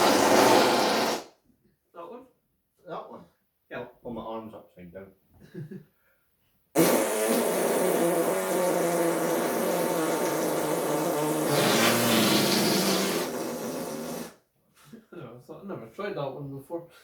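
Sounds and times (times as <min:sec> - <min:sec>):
arm fart buzzing: 0:06.8 - 0:14.3.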